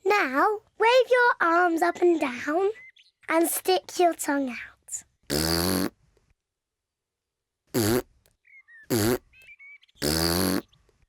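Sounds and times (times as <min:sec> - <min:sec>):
cartoon raspberries blowing: 0:05.3 - 0:06.0, 0:07.7 - 0:08.1, 0:08.9 - 0:09.3, 0:10.0 - 0:10.8.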